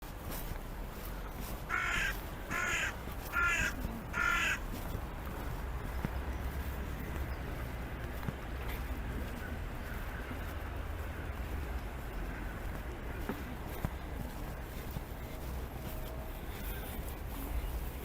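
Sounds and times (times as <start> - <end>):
crow cawing: 1.6 - 4.9.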